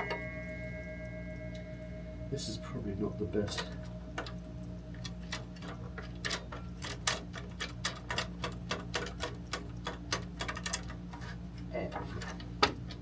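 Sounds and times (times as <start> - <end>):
steady low hum: 0.0 - 13.0
rapid metallic clicking: 5.0 - 11.0.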